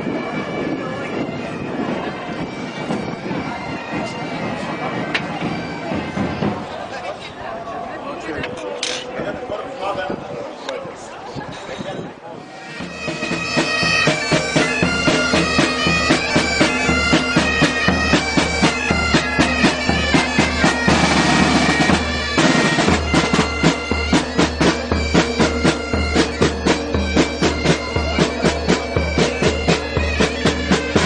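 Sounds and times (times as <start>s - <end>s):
reedy wind instrument melody: 0.0s - 7.1s, 12.4s - 31.0s
regular beat: 12.6s - 31.0s.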